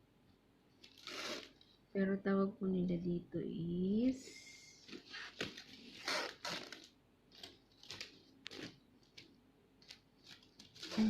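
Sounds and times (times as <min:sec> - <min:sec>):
tearing sounds: 0:00.8 - 0:01.6, 0:04.9 - 0:11.0.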